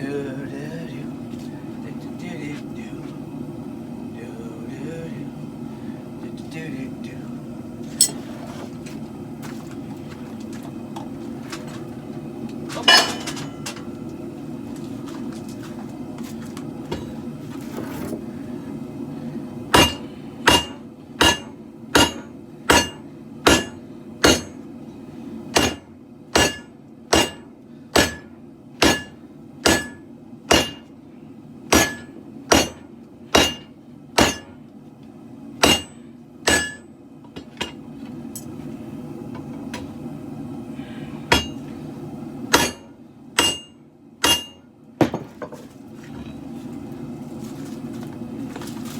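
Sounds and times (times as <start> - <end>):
forge burners hissing: 0.0 - 10.2, 15.7 - 34.6, 37.9 - 44.6
hammer striking steel on anvil: 8.0 - 8.2, 19.7 - 24.6, 25.6 - 30.9, 31.7 - 34.6, 35.6 - 36.9, 41.3 - 41.6, 42.5 - 45.2.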